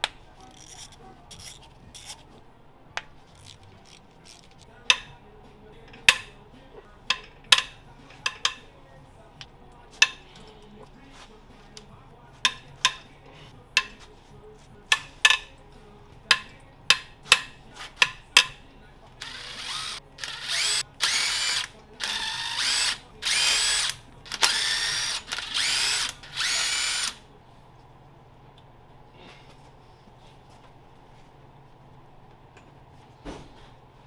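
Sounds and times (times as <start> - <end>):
power tool motor whine: 19.2 - 27.2.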